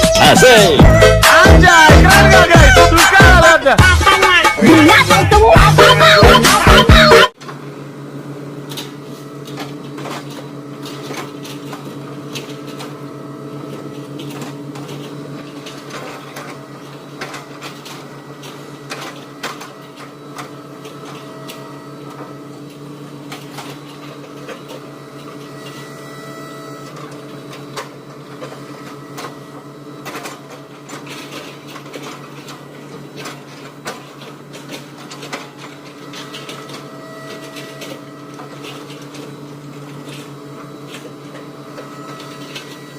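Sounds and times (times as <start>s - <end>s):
diesel engine droning: 0.0s - 7.3s.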